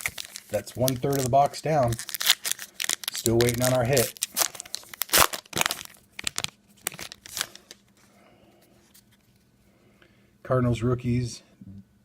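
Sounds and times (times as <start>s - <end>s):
card pack wrapper tearing: 0.0s - 7.8s.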